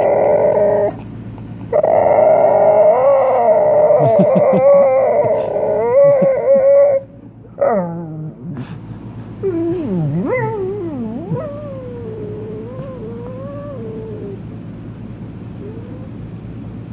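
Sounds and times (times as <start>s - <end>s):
cat yowling: 9.4s - 14.4s.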